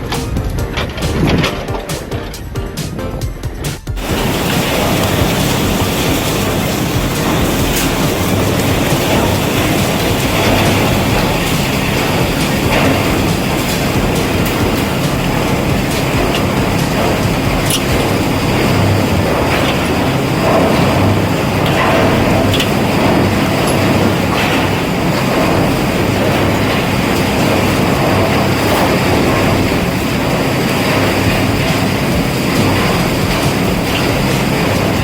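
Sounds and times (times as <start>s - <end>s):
sharp knocks and clicks: 0.0s - 24.8s
chip crusher machinery drone: 0.0s - 35.0s.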